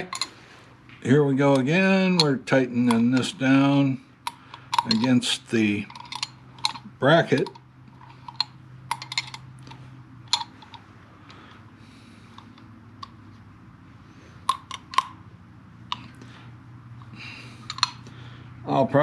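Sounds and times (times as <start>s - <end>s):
wrench clicking on metal parts: 0.0s - 0.4s, 1.5s - 3.5s, 4.2s - 10.8s, 14.5s - 15.2s, 17.0s - 18.1s
faint steady hum: 0.0s - 19.0s.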